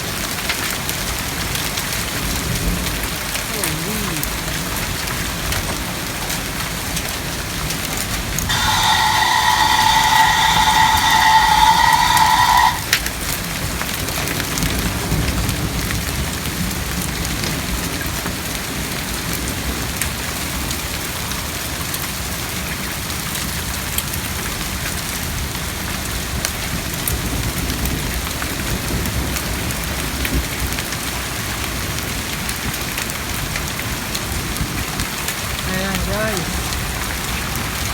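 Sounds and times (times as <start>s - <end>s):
heavy rain pouring: 0.0s - 37.9s
hailstones striking hard surfaces: 8.5s - 12.8s.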